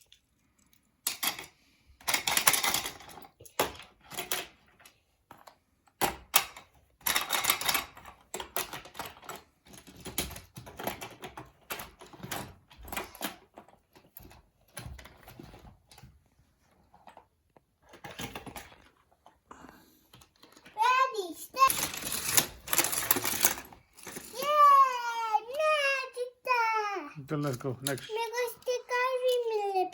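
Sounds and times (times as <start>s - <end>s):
plastic toys clattering: 0.9s - 29.9s.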